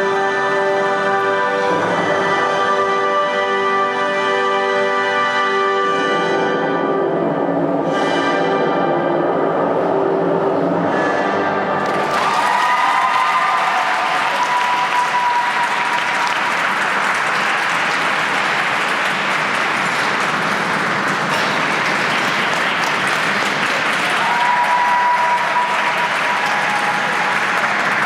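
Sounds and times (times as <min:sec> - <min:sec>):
audience applauding: 0:11.8 - 0:28.0.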